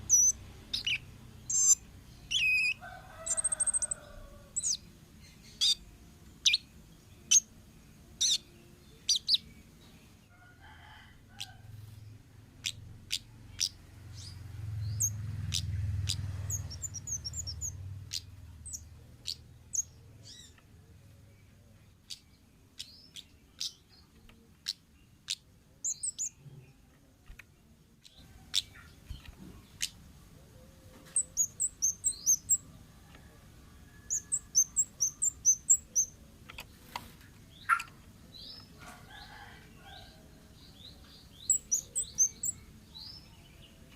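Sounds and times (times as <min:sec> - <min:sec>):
bird calling high chips: 0:37.6 - 0:38.0.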